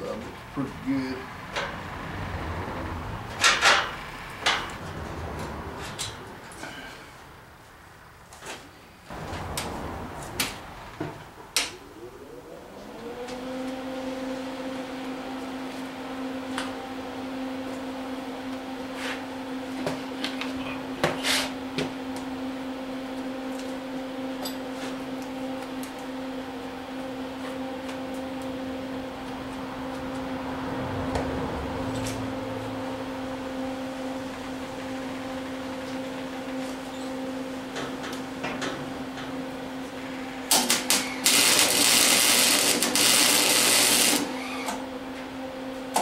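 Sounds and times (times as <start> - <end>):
electric motor humming: 39.5 - 44.9.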